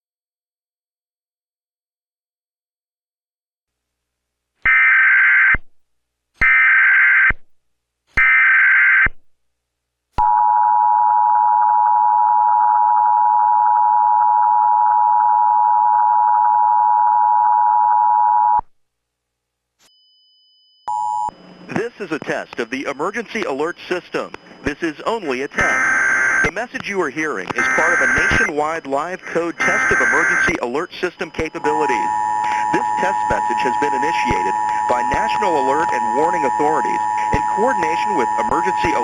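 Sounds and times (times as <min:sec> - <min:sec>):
screeching data bursts: 0:23.2 - 0:26.6, 0:27.4 - 0:39.0
dual-tone alert beep: 0:27.5 - 0:28.5, 0:29.3 - 0:30.6.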